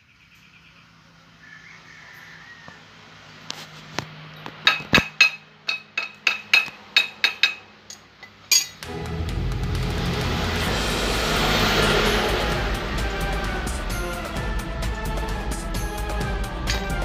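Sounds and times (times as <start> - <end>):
hammer tapping on metal: 4.5 - 8.8
background music: 8.8 - 17.0.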